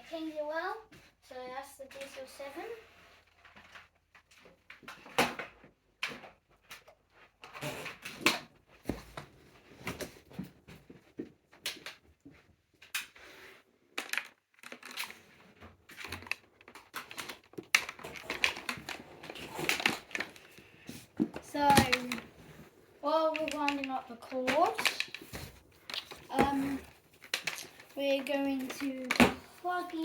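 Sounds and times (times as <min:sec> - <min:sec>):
vacuum cleaner handling clicks and rattles: 0:14.0 - 0:15.2, 0:15.9 - 0:20.6, 0:21.2 - 0:22.4, 0:23.1 - 0:30.0.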